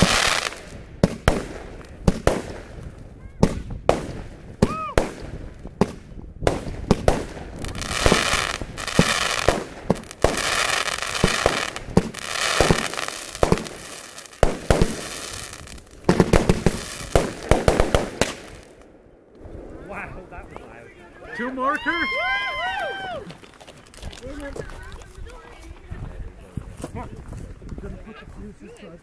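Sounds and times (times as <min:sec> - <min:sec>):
fireworks bangs: 0:00.0 - 0:22.0
fireworks crackling: 0:00.0 - 0:25.9.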